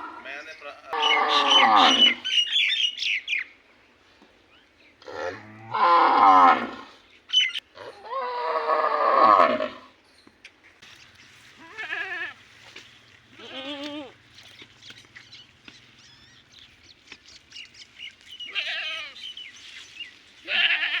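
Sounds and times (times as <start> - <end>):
goat bleating: 11.6 - 12.4, 13.4 - 14.2, 18.5 - 19.2, 20.4 - 21.0.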